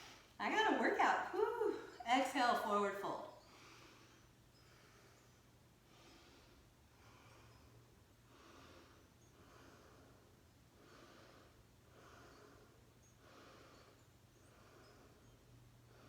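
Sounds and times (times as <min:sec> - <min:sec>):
faint breathing: 0:03.4 - 0:16.0.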